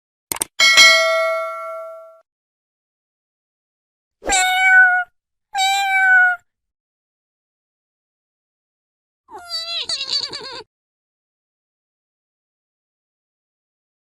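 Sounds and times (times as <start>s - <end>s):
bell-like ding: 0.6s - 2.2s
cat meowing: 4.2s - 6.4s, 9.3s - 10.7s.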